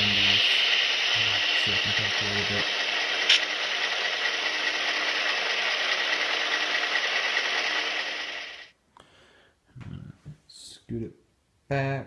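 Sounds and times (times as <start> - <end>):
diesel locomotive engine idling: 0.0 - 8.7.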